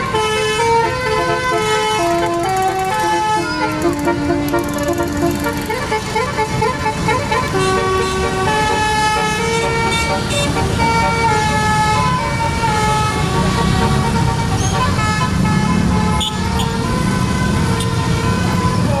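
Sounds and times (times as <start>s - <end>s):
multi-tone air horn tune: 0.0s - 18.9s
bus engine rumble: 0.0s - 19.0s.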